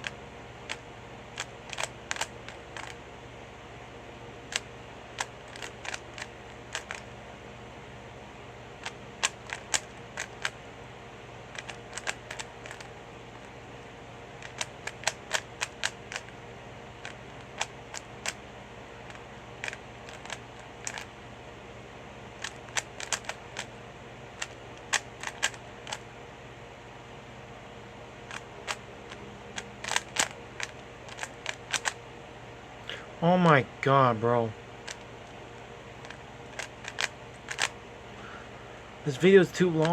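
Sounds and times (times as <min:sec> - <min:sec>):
puzzle cube plastic clicking: 0:00.0 - 0:03.0, 0:04.5 - 0:07.1, 0:08.8 - 0:10.6, 0:11.5 - 0:13.6, 0:14.4 - 0:16.4, 0:17.0 - 0:18.4, 0:19.0 - 0:21.1, 0:22.4 - 0:23.8, 0:24.4 - 0:26.1, 0:28.2 - 0:32.0, 0:34.8 - 0:37.8, 0:39.4 - 0:39.9.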